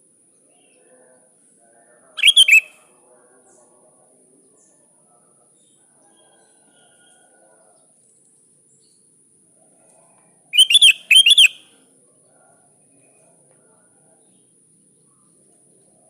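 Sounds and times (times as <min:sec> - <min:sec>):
bulbul calling: 0:02.2 - 0:02.8, 0:10.5 - 0:11.6.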